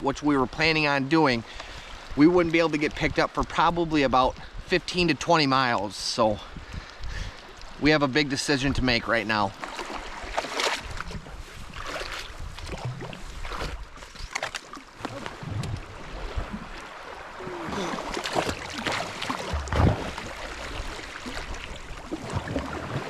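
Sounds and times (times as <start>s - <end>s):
rushing river water: 5.0s - 23.0s
paddle strokes and splashes: 8.6s - 23.0s.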